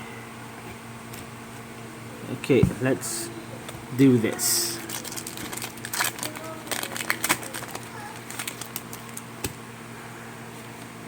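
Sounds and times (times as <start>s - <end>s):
crinkly card pack packaging: 4.3s - 9.3s.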